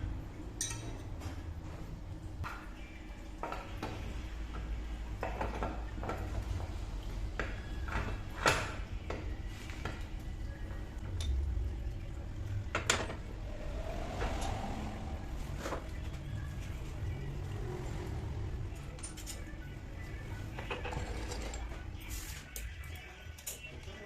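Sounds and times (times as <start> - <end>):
metal tools clinking: 0.6 - 1.1.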